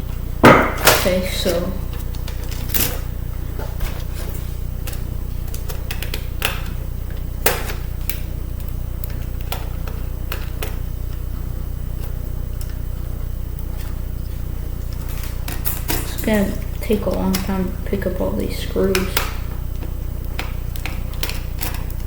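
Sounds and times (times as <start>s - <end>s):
steady low hum: 0.0s - 22.0s.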